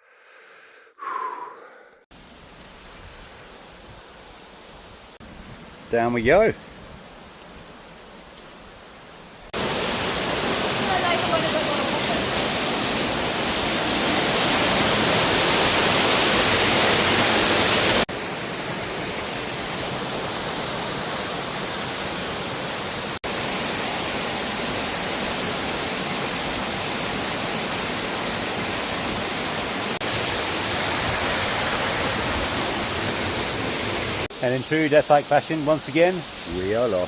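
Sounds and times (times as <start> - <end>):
rushing water: 9.5 - 37.0.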